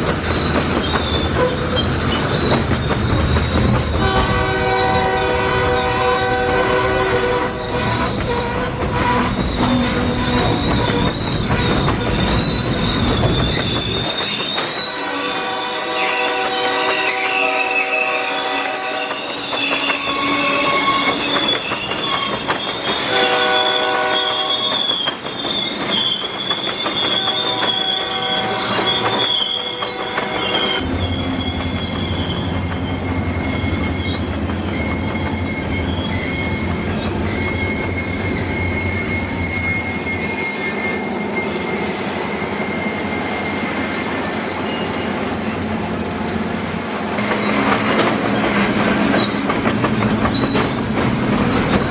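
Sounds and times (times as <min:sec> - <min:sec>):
train rumbling by: 0:00.0 - 0:51.9
train wheel squeal: 0:00.0 - 0:51.9
locomotive horn blasts: 0:04.0 - 0:10.6, 0:15.0 - 0:21.1, 0:23.1 - 0:24.8, 0:27.2 - 0:32.0.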